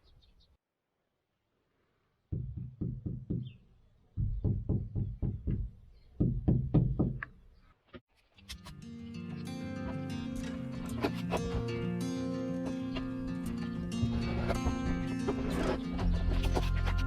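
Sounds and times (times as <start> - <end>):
rapid knocking: 4.2 - 7.2.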